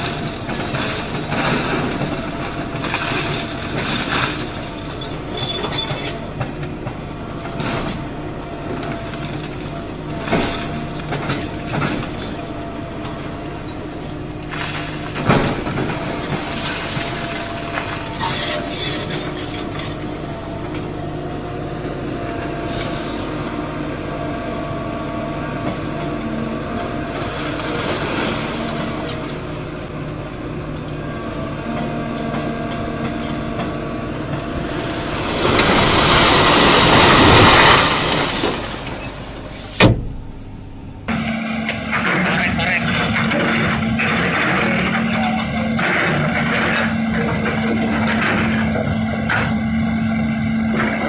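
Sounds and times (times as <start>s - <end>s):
diesel machinery running: 0.0s - 51.0s
sharp knocks: 39.8s - 40.4s.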